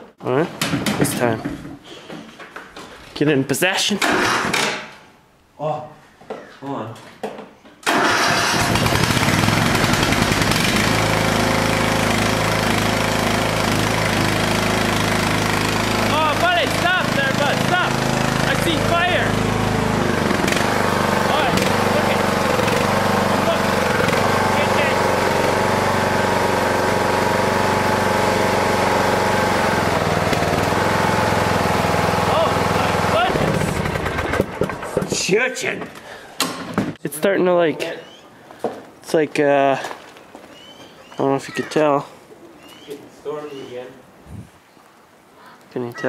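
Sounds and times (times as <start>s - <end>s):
lawn tractor engine running: 7.8s - 35.3s.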